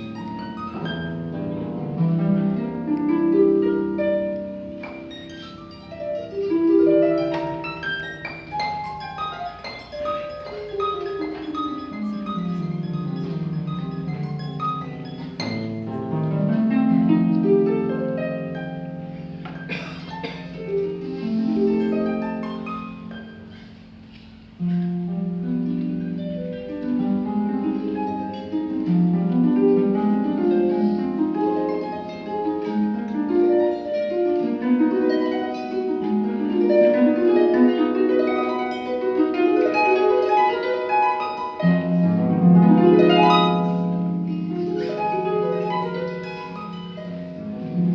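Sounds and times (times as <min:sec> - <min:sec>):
harp playing: 0:00.0 - 0:47.9.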